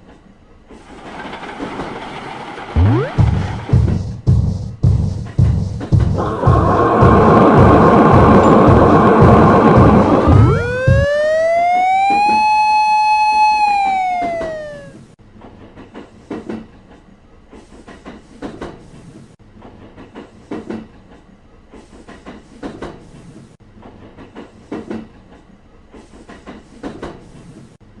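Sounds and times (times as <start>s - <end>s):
train wheels clattering over rail joints: 0.0s - 2.8s.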